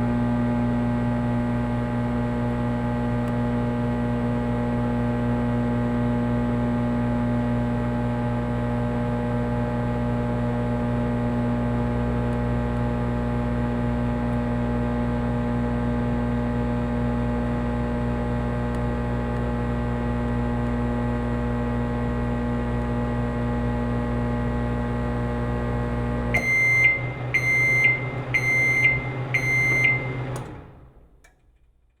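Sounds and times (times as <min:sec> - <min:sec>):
microwave oven humming: 0:00.0 - 0:31.2
short high beeps: 0:26.4 - 0:30.2.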